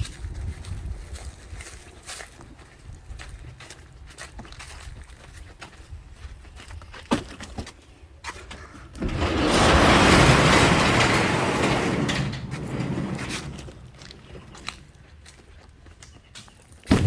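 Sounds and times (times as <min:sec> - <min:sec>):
shop door rumbling slide: 0:08.9 - 0:14.8.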